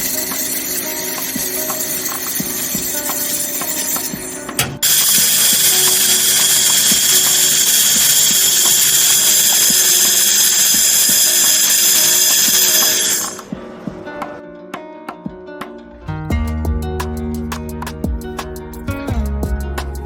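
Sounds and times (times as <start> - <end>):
laser welder hissing whine: 0.0 - 13.5.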